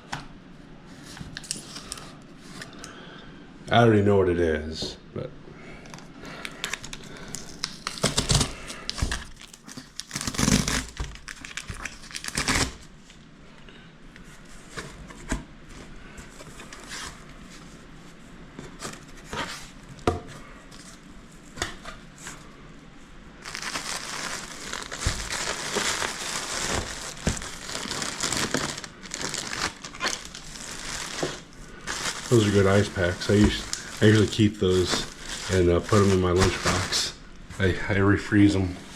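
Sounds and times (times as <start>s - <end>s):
packaging crinkling and tearing: 1.3s - 2.0s, 6.4s - 12.9s, 23.4s - 37.2s.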